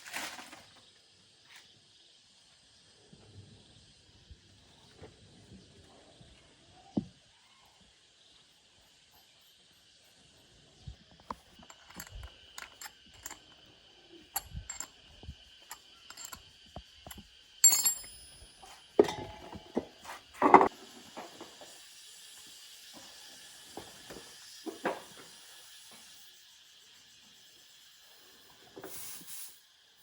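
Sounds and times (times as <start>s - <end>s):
metal tools clicking and knocking: 11.3s - 20.7s
ringing metallic clang: 17.6s - 19.8s.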